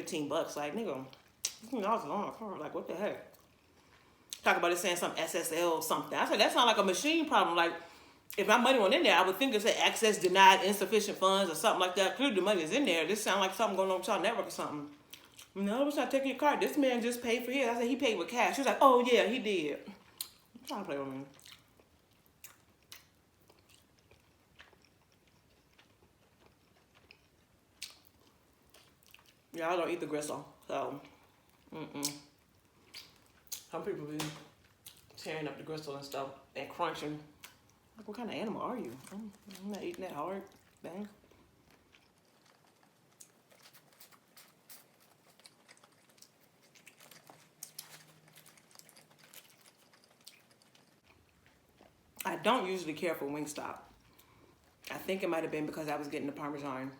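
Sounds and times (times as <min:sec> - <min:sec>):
mouth clicks and smacks chewing: 0:32.0 - 0:33.7, 0:41.7 - 0:52.0
person chewing with wet mouth clicks: 0:32.0 - 0:33.7.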